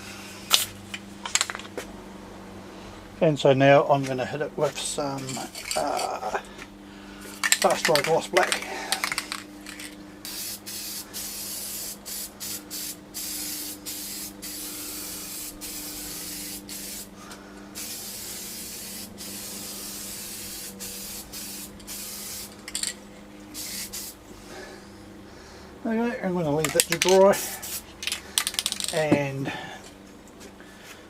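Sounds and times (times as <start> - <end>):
steady low hum: 0.0 - 31.0
aerosol spray can hissing: 7.3 - 17.2, 17.8 - 22.9, 23.5 - 24.2, 26.7 - 29.0.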